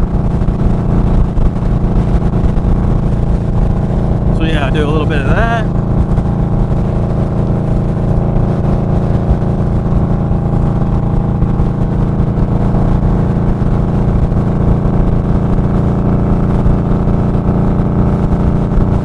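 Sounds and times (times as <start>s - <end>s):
motorcycle engine cruising: 0.0s - 19.0s.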